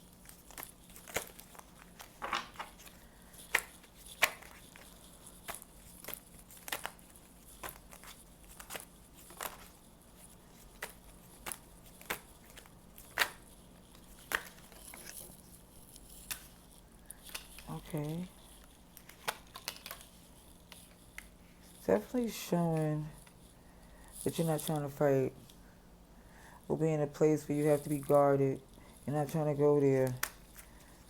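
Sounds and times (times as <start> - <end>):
faint steady hum: 0.0 - 31.0
cards snapping and flicking: 10.7 - 13.4, 14.2 - 14.8.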